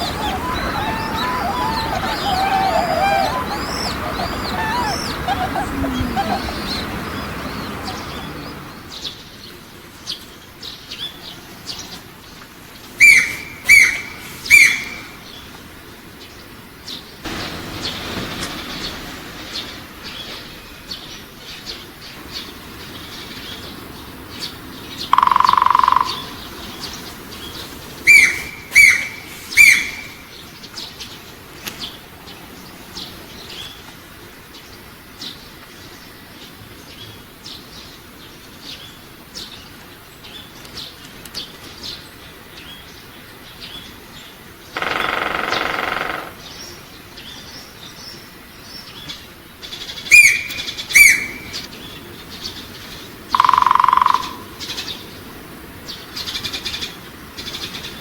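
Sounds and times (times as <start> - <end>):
sharp downward-sweeping bird calls: 0.0 - 9.0, 13.0 - 15.3, 25.0 - 27.0, 28.0 - 30.4, 44.8 - 46.4, 50.1 - 51.7, 53.3 - 54.9
small high bird chirps: 0.0 - 9.2, 13.0 - 15.3, 25.0 - 30.4, 50.1 - 51.8
loud steady tone: 25.1 - 26.4.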